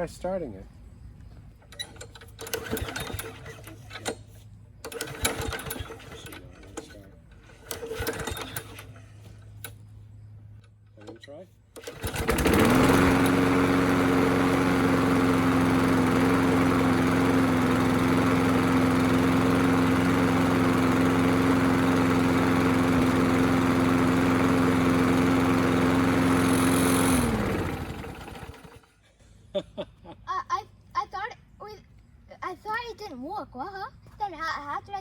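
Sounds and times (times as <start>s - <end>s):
lawn mower engine running: 1.6s - 29.0s.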